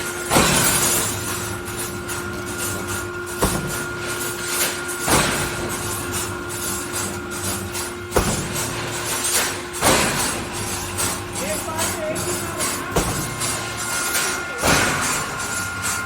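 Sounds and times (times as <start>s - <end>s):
sharp metal clanks: 0.0s - 16.0s
welding machine humming: 0.0s - 16.0s.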